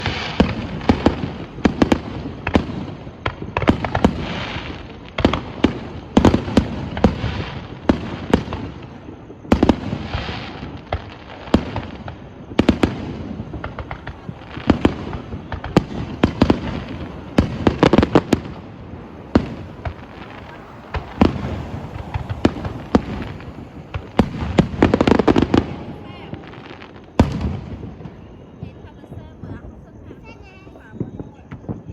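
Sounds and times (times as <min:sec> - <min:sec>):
fireworks exploding: 0:00.0 - 0:31.9
crackling and rumbling echoes: 0:11.6 - 0:29.6.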